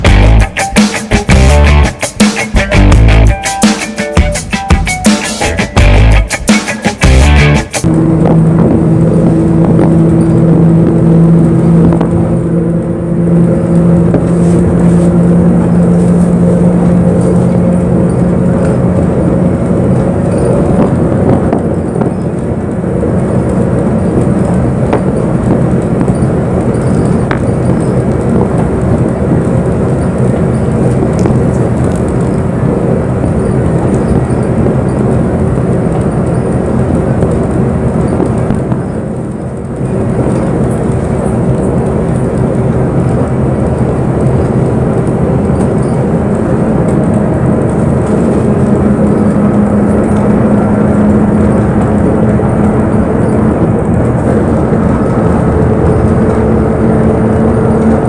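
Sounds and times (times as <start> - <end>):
higher hum: 0.0 - 35.5, 38.5 - 58.0
bus engine drone: 0.0 - 58.0
road rumble: 0.0 - 58.0.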